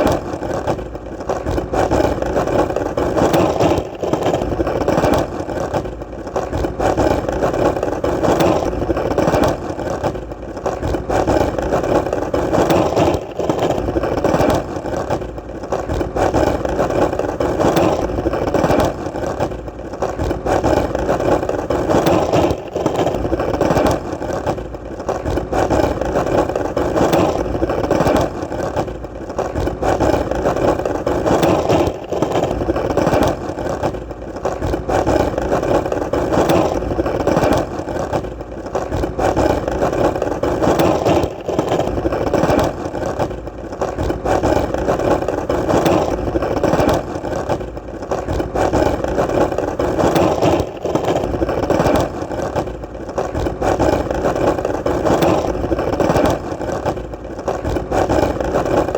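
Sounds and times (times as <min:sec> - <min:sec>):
skateboard wheels rolling: 0:00.0 - 0:58.9.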